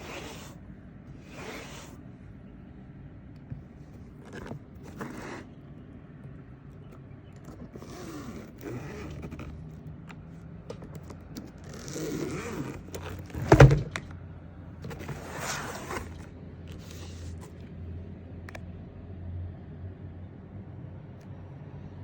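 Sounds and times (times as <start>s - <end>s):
packaging scraping and rustling: 0.0s - 2.0s, 4.0s - 5.6s, 14.8s - 17.7s.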